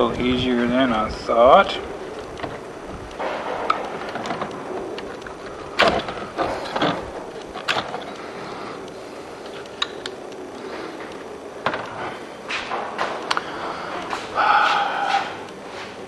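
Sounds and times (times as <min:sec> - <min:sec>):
parts and tools knocking and rattling: 0:02.0 - 0:08.4, 0:11.0 - 0:13.4.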